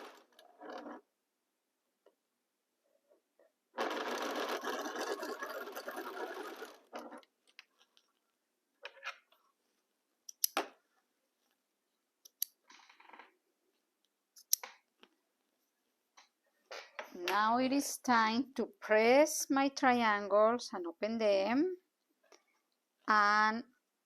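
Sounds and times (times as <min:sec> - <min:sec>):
sewing machine stitching fabric: 0:00.0 - 0:01.1, 0:03.7 - 0:07.3.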